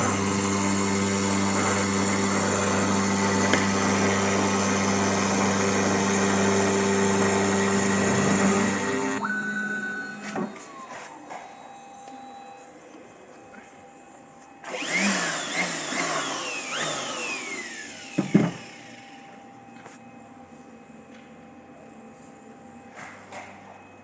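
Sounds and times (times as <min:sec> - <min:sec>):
milling machine motor hum: 0:00.0 - 0:10.9, 0:14.6 - 0:19.8.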